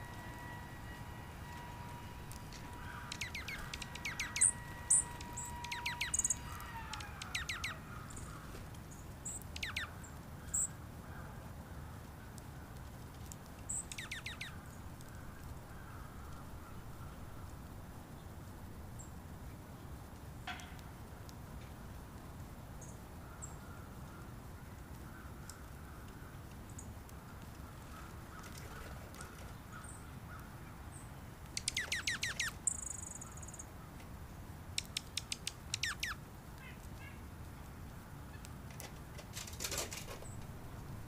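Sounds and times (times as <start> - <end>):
faint low outdoor rumble: 0.0 - 41.0
small birds chirping: 1.5 - 10.8, 13.2 - 20.4, 22.8 - 34.1, 34.7 - 38.6
high bird peeps: 2.8 - 8.4, 9.2 - 10.7, 13.7 - 14.6, 31.6 - 33.6, 34.8 - 36.8.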